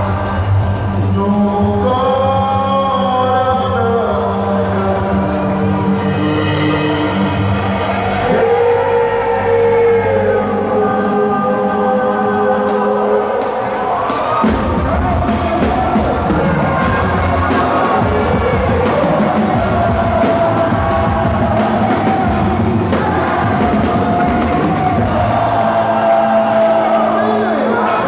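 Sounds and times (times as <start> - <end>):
drum beat and bass: 0.0 - 2.1, 12.7 - 28.0.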